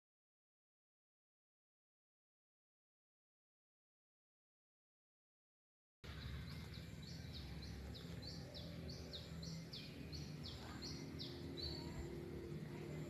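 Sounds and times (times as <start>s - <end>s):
bird chirping: 6.0s - 13.0s
faint low hum: 6.1s - 13.0s.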